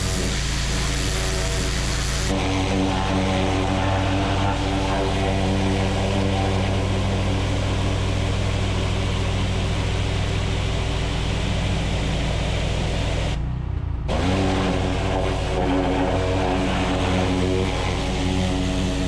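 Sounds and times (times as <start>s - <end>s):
pressure washer spraying water: 0.0s - 13.4s, 14.1s - 19.0s
engine hum: 0.0s - 19.0s.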